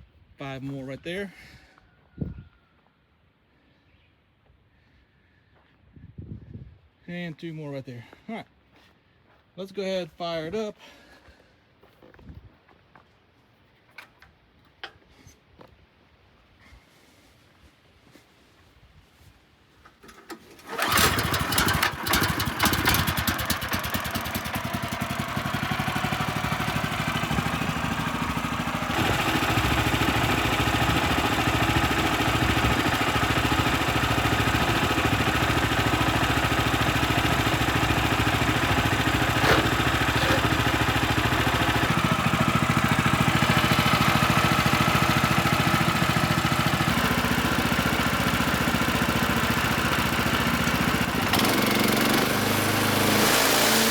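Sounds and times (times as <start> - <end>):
gas engine running: 20.5 - 53.9.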